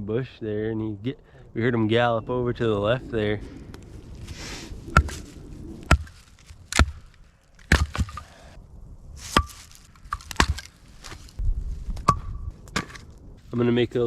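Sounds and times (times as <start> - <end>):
knife chopping into wood: 5.0 - 5.2, 5.9 - 8.3, 9.3 - 10.7.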